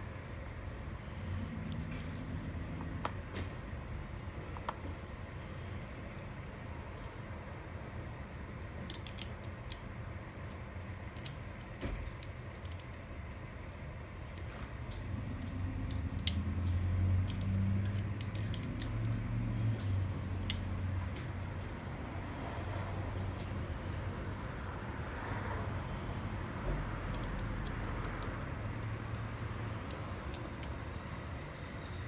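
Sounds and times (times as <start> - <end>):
small metal lock parts clicking: 8.8 - 9.9, 12.0 - 13.0, 15.8 - 19.3, 27.0 - 30.8.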